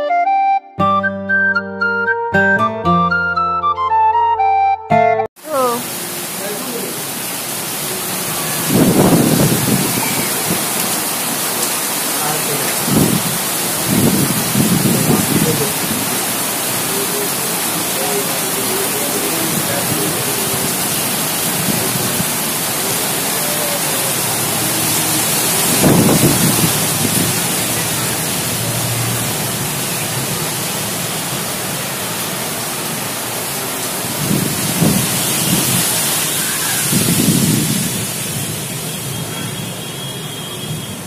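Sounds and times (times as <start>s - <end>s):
heavy rain: 5.4s - 41.0s
wind: 5.4s - 41.0s
low thunder rumbles: 8.6s - 10.7s, 12.8s - 16.1s, 24.3s - 28.0s, 36.9s - 38.1s.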